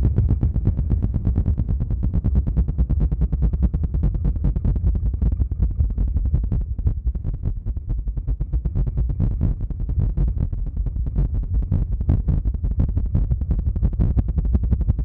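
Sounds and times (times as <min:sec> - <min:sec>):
rapid thumps on microphone: 0:00.0 - 0:06.0.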